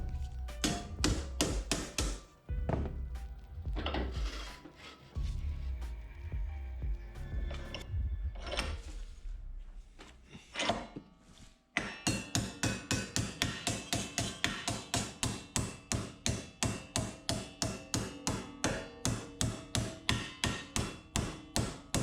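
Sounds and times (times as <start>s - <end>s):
hammer on steel: 0.6s - 2.3s, 11.8s - 22.0s.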